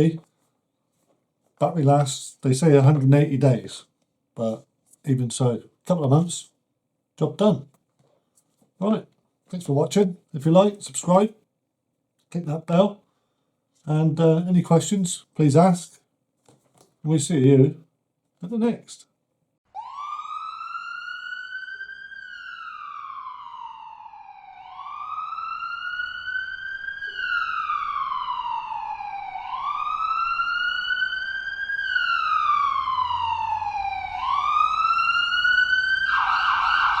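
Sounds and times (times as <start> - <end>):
harsh buzzy siren tone: 19.7 - 37.0
siren wailing: 19.7 - 37.0.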